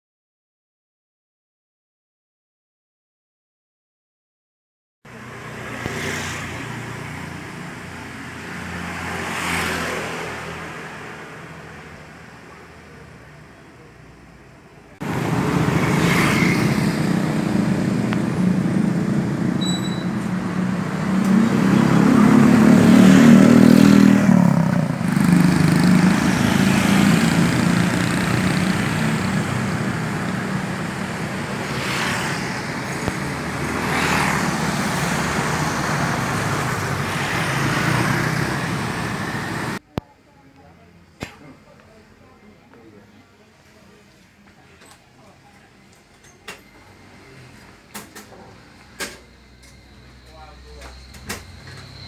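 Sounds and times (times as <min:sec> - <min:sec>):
vehicle engine and road noise: 0:05.1 - 0:40.0, 0:43.8 - 0:52.0.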